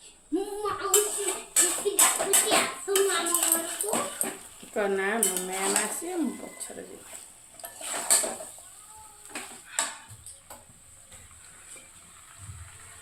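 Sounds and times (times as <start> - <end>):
utensils clinking against dishes: 0.8 - 8.6, 9.2 - 10.5.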